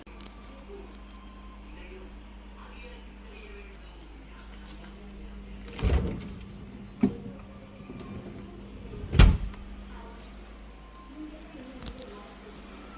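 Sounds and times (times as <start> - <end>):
steady low hum: 2.1 - 11.0
refrigerator door thud: 5.8 - 9.7.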